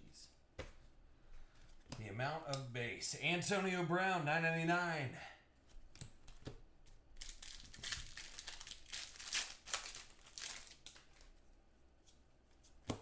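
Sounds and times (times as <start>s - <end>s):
foil wrapper crinkling and tearing: 7.2s - 11.4s.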